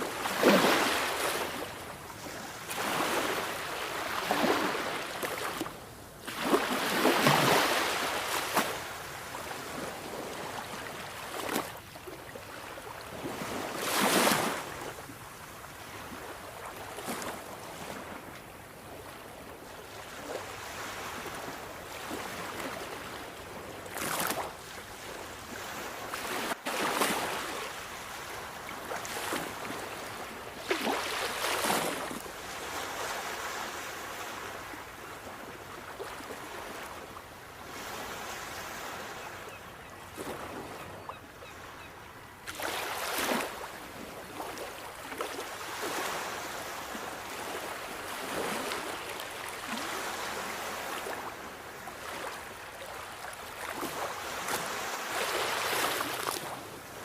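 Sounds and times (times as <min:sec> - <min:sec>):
waves breaking: 0:00.0 - 0:15.0, 0:23.9 - 0:34.8, 0:42.4 - 0:57.0.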